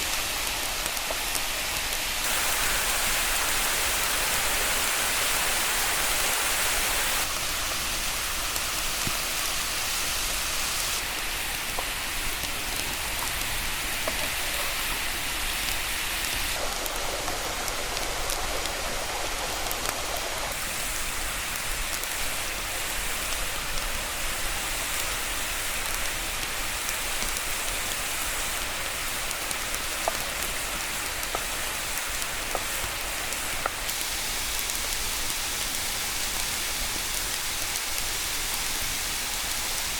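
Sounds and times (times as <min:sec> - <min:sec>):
waterfall rushing: 0:02.2 - 0:11.0.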